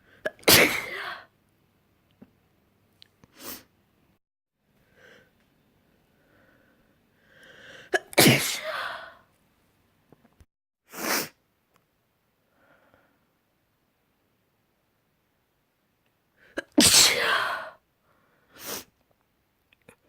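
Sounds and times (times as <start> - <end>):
person sneezing: 0.2 - 1.3, 7.9 - 9.2, 16.6 - 17.8.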